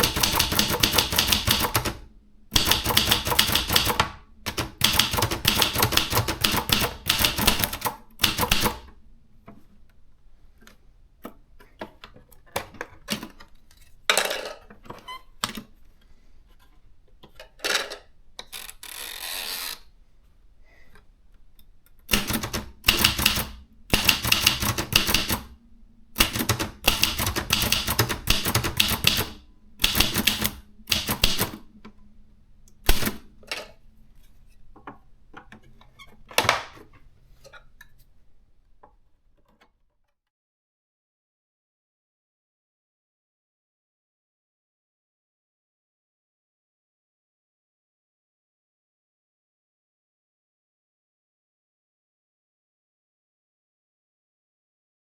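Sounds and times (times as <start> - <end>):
typewriter key strikes: 0.0 - 2.0, 2.6 - 8.9, 22.1 - 25.5, 26.2 - 31.6
typewriter rasping: 0.0 - 2.0, 2.6 - 8.9, 22.1 - 25.6, 26.2 - 31.6.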